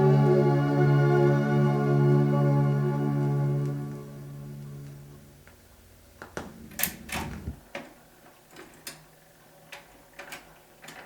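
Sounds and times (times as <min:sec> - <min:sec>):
orchestra chord: 0:00.0 - 0:05.4
record surface noise: 0:04.6 - 0:08.7.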